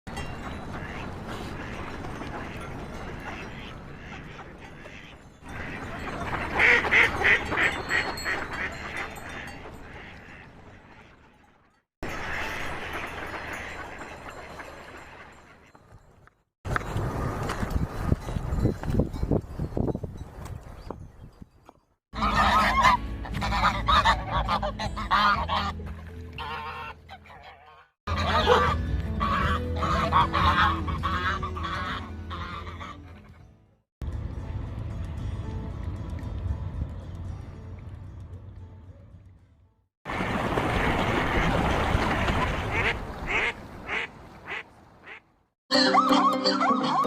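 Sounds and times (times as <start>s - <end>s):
ducks quacking: 0.4s - 11.5s, 12.1s - 15.7s, 22.2s - 25.8s, 26.4s - 33.5s, 40.7s - 45.2s
waterfowl calling: 0.6s - 11.5s, 22.2s - 33.4s, 40.7s - 45.2s
music: 22.2s - 27.4s, 28.1s - 39.8s, 45.7s - 47.0s.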